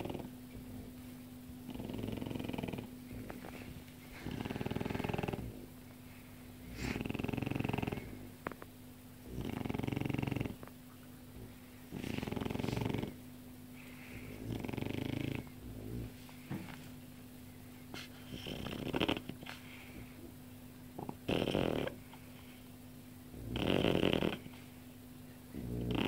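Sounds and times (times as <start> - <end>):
pet snoring: 0.0 - 5.9, 6.6 - 10.7, 11.3 - 13.2, 13.8 - 16.9, 17.9 - 20.1, 21.0 - 22.5, 23.3 - 24.6, 25.5 - 26.0.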